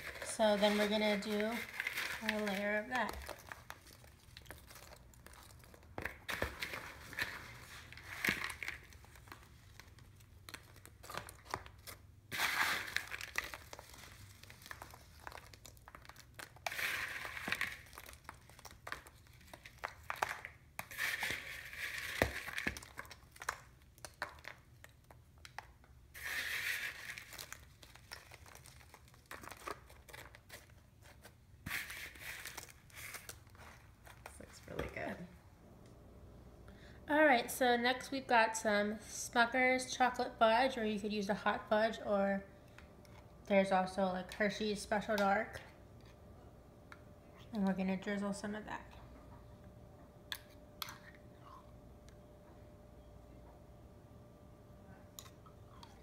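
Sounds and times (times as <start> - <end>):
plastic bag crinkling: 0.0 - 25.6, 26.2 - 30.8.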